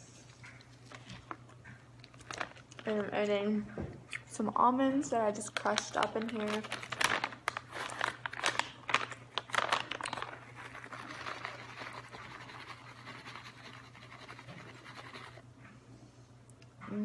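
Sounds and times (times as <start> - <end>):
crackly clicks and crinkles: 0.2 - 3.4, 5.4 - 11.8.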